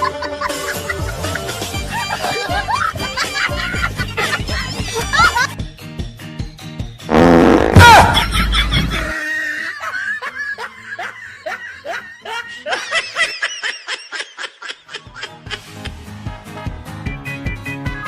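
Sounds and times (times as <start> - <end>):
background music: 0.0 - 9.2, 14.8 - 18.0
loud noisy blast: 7.1 - 8.2.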